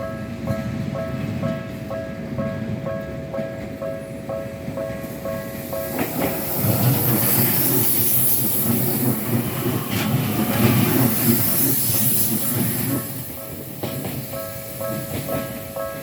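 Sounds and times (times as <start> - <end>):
electric train passing: 0.0 - 16.0
wheels clacking over rail joints: 4.7 - 16.0.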